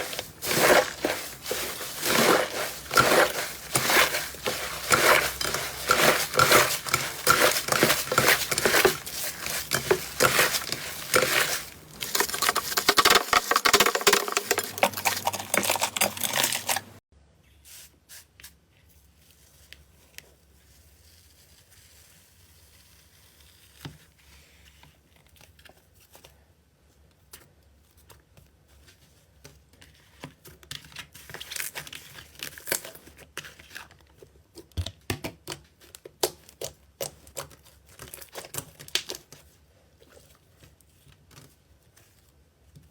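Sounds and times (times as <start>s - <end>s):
slime squishing and crackling: 0.0s - 17.0s, 35.4s - 40.6s.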